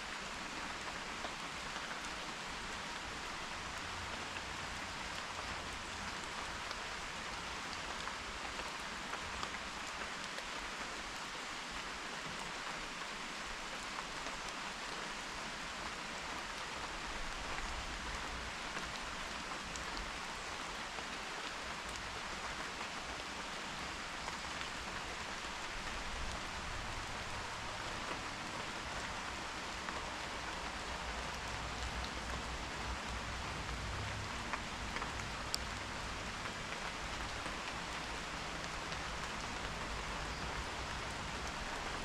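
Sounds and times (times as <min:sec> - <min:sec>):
steady rain falling: 0:00.0 - 0:42.0
raindrops ticking: 0:24.2 - 0:42.0.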